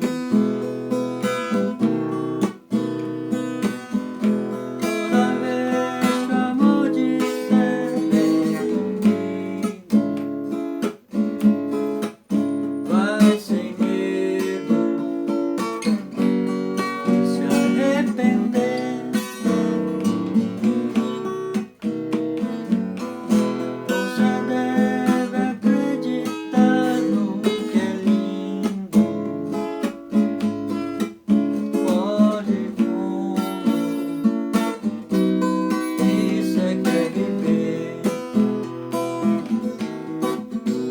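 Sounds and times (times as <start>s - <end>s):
acoustic guitar playing: 0.0s - 40.9s.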